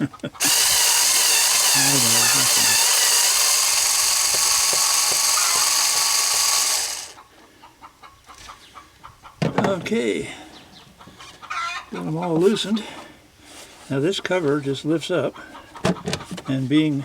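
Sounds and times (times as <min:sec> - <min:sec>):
cordless screwdriver running: 0:00.4 - 0:07.2.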